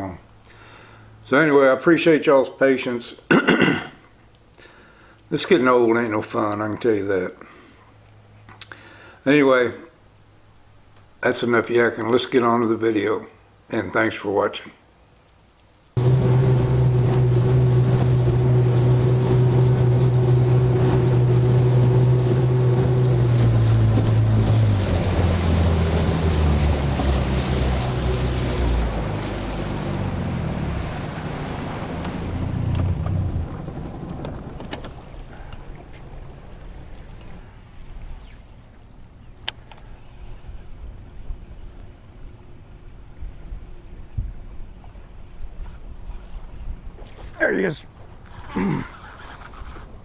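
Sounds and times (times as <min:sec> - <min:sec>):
wind: 0:00.0 - 0:50.0
water noise: 0:15.8 - 0:50.0
boat motor running: 0:16.0 - 0:38.0.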